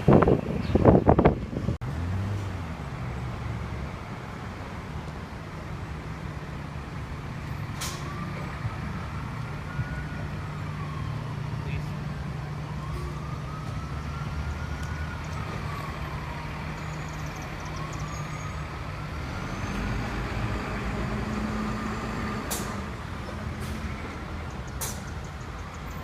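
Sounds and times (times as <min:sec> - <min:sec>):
fire truck siren: 0:06.8 - 0:26.0.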